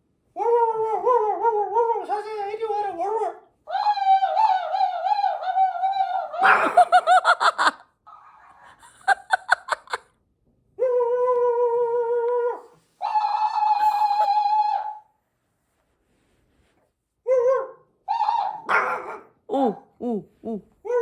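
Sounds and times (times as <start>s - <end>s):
high toy laughter: 3.9s - 7.9s, 8.8s - 10.1s, 13.0s - 14.9s.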